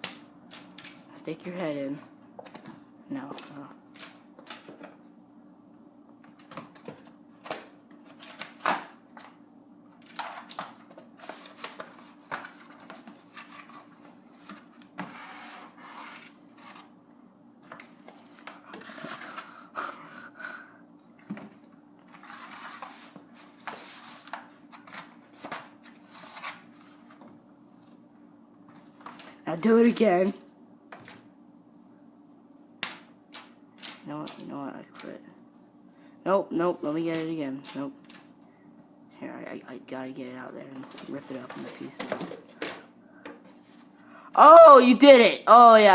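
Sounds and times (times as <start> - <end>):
cardboard rustling and crinkling: 21.4 - 27.3.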